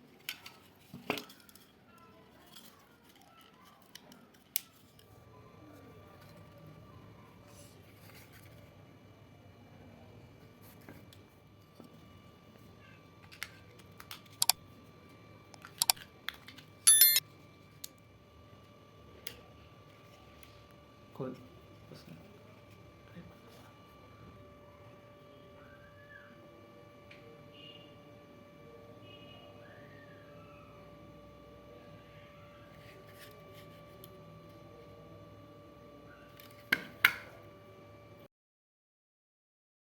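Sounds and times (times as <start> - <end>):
plastic parts clicking: 15.6 - 16.0
sharp clicks: 16.9 - 17.2
faint hum: 22.4 - 36.5.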